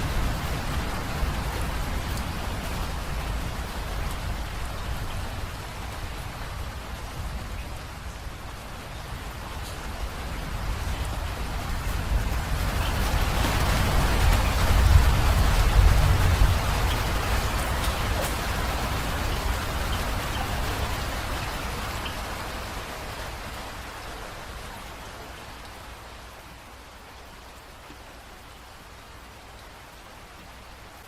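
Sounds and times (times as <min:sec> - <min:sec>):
rain falling: 0:00.0 - 0:31.0.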